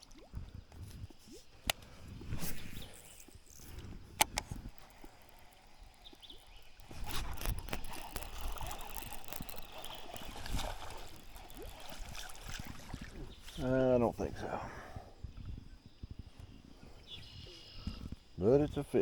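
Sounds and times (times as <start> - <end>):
water splashing and trickling: 0.0 - 14.4
sharp clicks: 3.2 - 12.3.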